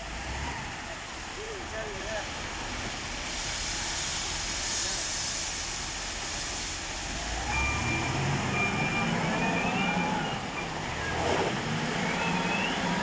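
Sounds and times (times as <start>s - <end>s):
diesel engine running: 0.0s - 13.0s
steady hissing rush: 1.4s - 7.4s.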